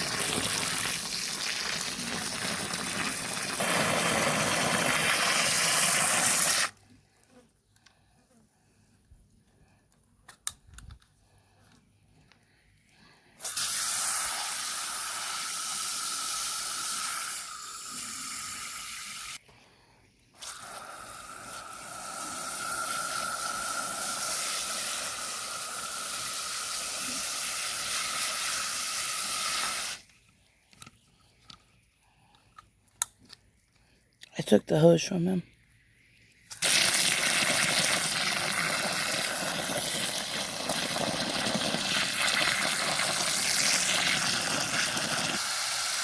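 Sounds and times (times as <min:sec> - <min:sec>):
garden hose spraying water: 0:00.0 - 0:06.9, 0:13.4 - 0:19.4, 0:20.3 - 0:30.2, 0:34.4 - 0:46.0.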